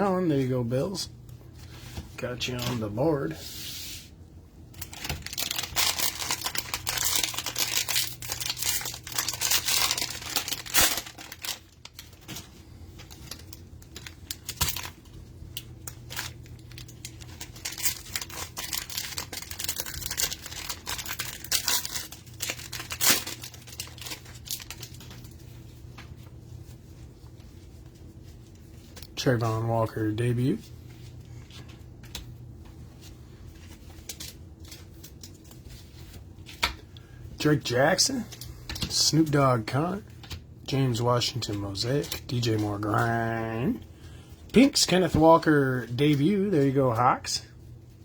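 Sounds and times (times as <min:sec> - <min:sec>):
cellophane wrapper crinkling: 0:04.7 - 0:29.2.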